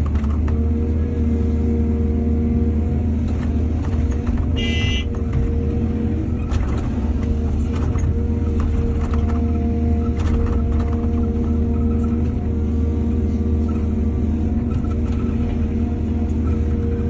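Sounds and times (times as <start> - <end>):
diesel engine under load: 0.0 - 17.0.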